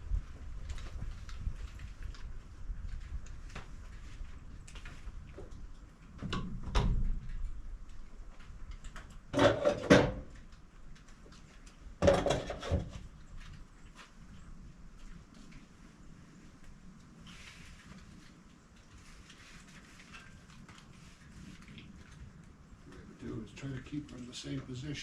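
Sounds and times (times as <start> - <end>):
log thudding and clunking: 12.0 - 13.0.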